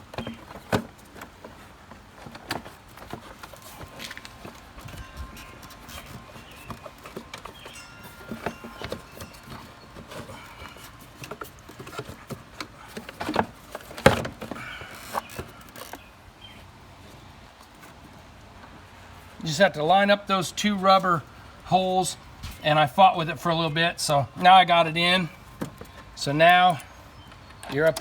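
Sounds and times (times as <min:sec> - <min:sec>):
plastic knocks clicks and rattles: 0:00.0 - 0:16.0.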